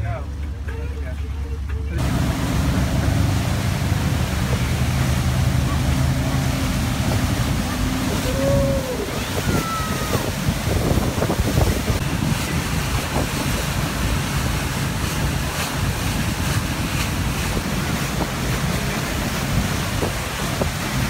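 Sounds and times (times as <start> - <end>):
water rushing: 0.0 - 21.0
wind buffeting microphone: 2.0 - 21.0.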